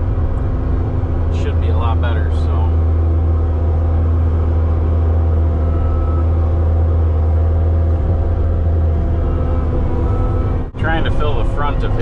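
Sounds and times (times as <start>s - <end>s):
loader engine droning: 0.0s - 12.0s.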